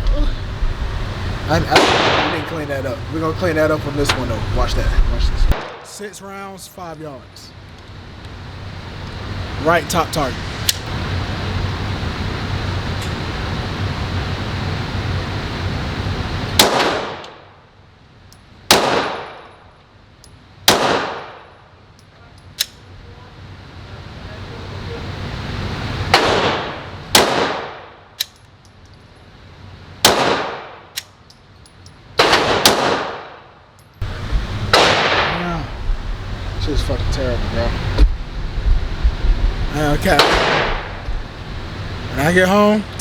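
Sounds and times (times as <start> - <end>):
steady rushing noise: 0.0 - 17.8, 32.2 - 43.0
pistol shots echoing: 1.7 - 2.5, 18.7 - 19.5, 20.7 - 21.4, 26.2 - 27.9, 30.0 - 30.8, 32.2 - 33.4, 34.7 - 35.3, 40.2 - 40.9.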